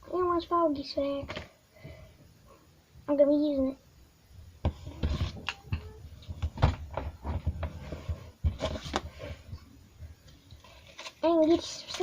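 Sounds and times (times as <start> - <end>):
items knocking and tapping: 4.6 - 9.1
rustling: 4.6 - 12.0.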